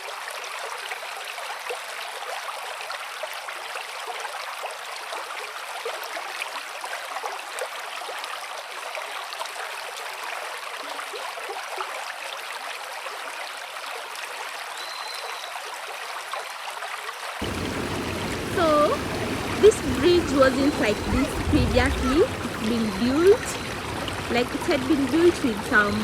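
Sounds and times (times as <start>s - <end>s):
river rushing and babbling: 16.7s - 26.0s.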